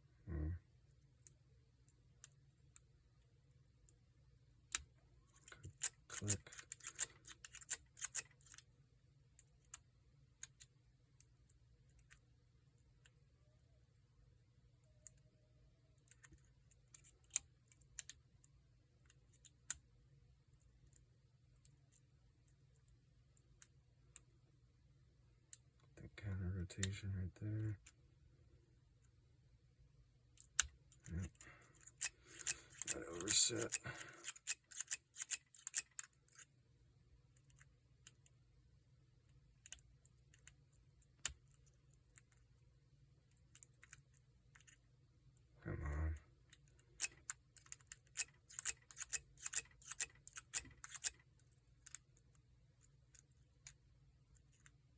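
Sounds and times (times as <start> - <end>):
metallic clicks of lock picking: 4.7 - 8.7, 16.0 - 19.8, 30.4 - 36.5, 46.5 - 52.2.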